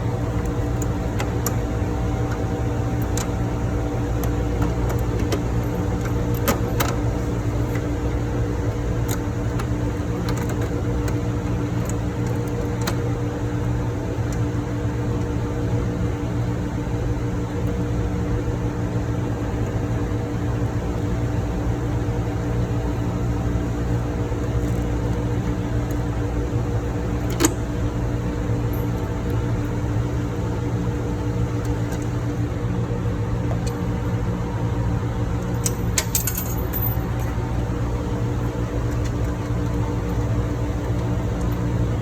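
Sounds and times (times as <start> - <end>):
engine-room machinery drone: 0.0 - 42.0
metallic clinks: 35.6 - 37.2.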